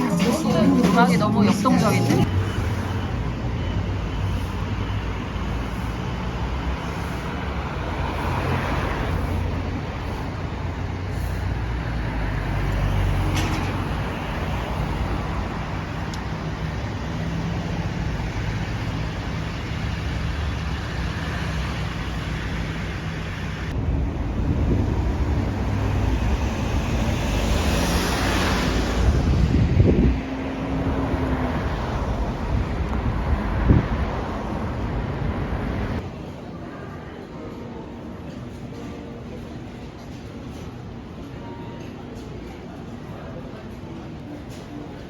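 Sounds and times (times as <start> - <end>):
road traffic rumble: 0.0 - 45.0.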